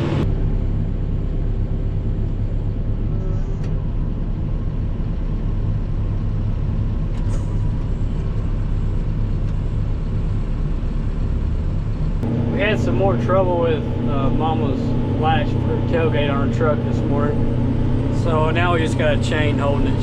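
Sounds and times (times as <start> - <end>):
tractor engine droning: 0.0 - 20.0.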